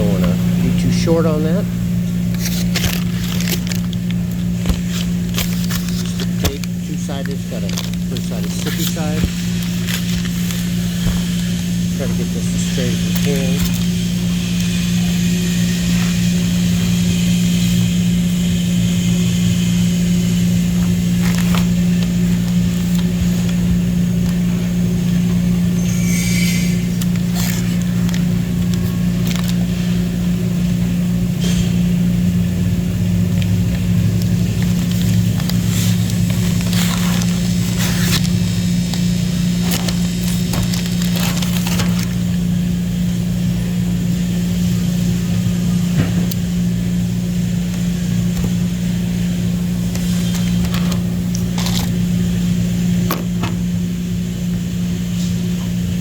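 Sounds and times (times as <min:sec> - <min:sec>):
steady low hum: 0:00.0 - 0:56.0
tape and cable crackling: 0:02.1 - 0:14.7, 0:20.4 - 0:25.7, 0:26.7 - 0:30.4, 0:33.2 - 0:42.7, 0:47.6 - 0:52.3.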